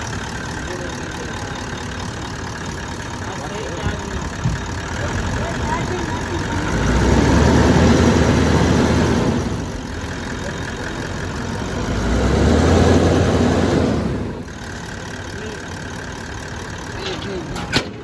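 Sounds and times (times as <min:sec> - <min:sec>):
diesel car engine running: 0:00.0 - 0:18.0.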